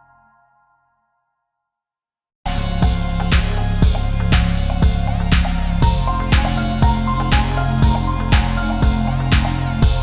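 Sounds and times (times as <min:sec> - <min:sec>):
electronic music with steady beat: 0:02.5 - 0:10.0.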